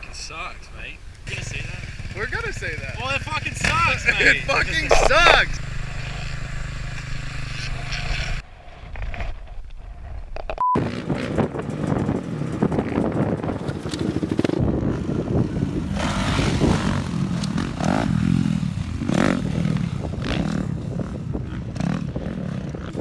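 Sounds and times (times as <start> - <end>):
dirt bike engines revving: 0.0 - 8.5, 10.8 - 23.0
wind buffeting microphone: 8.3 - 23.0.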